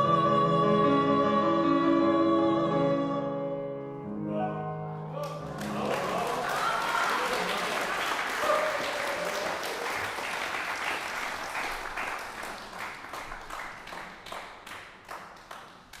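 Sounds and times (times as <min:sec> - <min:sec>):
audience applauding: 0:05.2 - 0:16.0.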